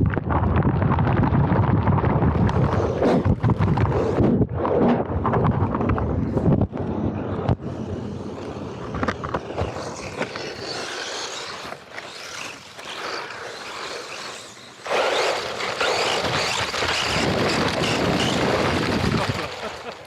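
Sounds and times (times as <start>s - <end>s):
wind on microphone: 0.0s - 10.7s, 15.6s - 19.6s
rc car tyres rattling on dirt: 0.0s - 20.0s.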